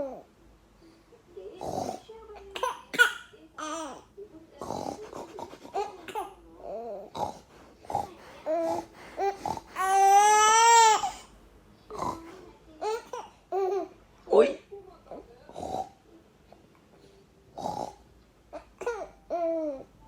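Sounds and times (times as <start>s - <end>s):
baby babbling: 2.4s - 4.1s, 8.5s - 11.3s, 12.8s - 13.9s, 18.6s - 19.9s.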